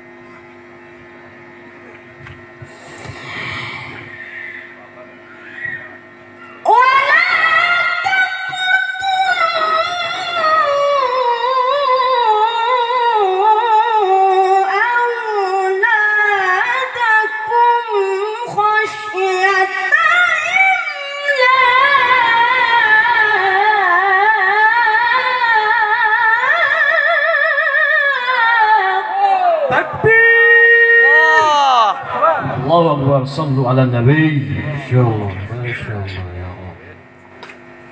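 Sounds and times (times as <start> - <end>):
man chanting recitation: 31.9 - 37.0.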